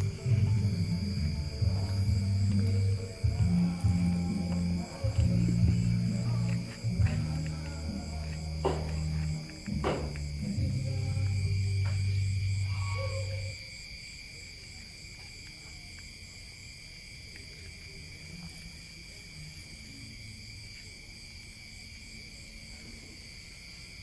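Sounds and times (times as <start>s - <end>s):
low background rumble: 0.0s - 8.2s
crickets trilling: 0.0s - 24.0s.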